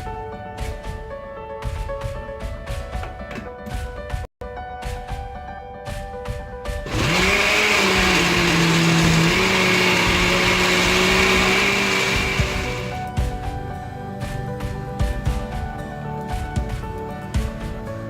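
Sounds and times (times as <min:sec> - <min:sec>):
background music: 0:00.0 - 0:18.0
electric blender running: 0:06.9 - 0:13.0.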